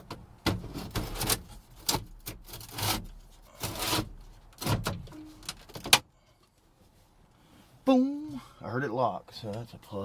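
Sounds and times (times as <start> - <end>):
plastic parts rubbing and scraping: 0.0 - 5.9.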